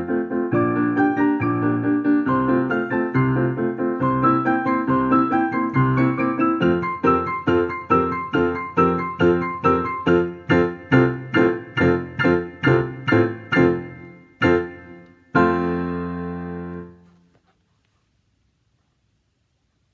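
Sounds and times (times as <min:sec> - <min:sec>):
digital piano chords: 0:00.0 - 0:17.2.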